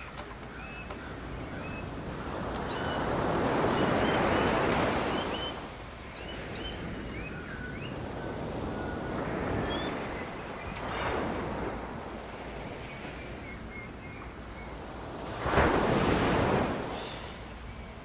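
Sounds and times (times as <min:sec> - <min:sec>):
ocean waves washing onto beach: 0:14.8 - 0:18.0.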